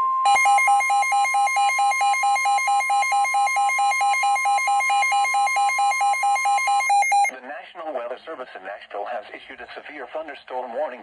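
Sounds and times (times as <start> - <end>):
buzzy electronic alarm beeping: 0.3 - 7.3
steady warning alarm tone: 0.3 - 7.3.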